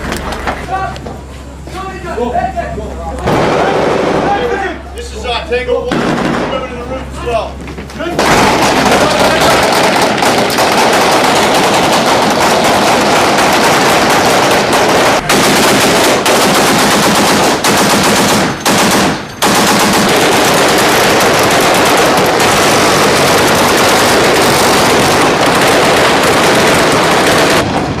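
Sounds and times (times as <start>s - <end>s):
automatic gunfire: 5.9s - 6.7s, 8.2s - 28.0s.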